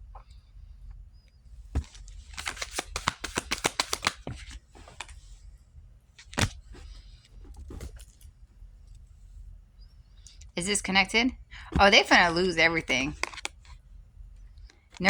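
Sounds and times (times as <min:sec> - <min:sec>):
cards shuffling clicks: 0:01.7 - 0:05.3, 0:06.2 - 0:08.3, 0:11.6 - 0:13.8
card snap: 0:01.8 - 0:05.2, 0:06.2 - 0:06.8, 0:12.8 - 0:13.6.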